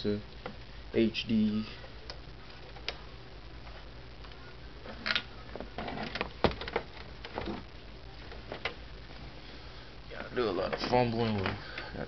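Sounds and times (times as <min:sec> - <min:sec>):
low steady hum: 0:00.0 - 0:12.0
cables and plastic connectors handled: 0:03.7 - 0:08.8.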